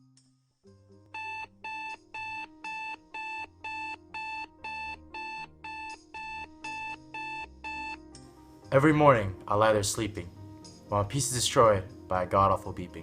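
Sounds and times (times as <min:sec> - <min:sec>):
alarm clock beeping: 0:01.2 - 0:08.0.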